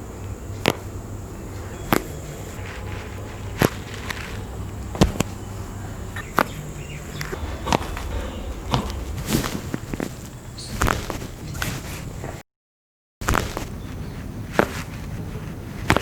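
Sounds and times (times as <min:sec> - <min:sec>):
joints cracking: 0:00.0 - 0:12.4.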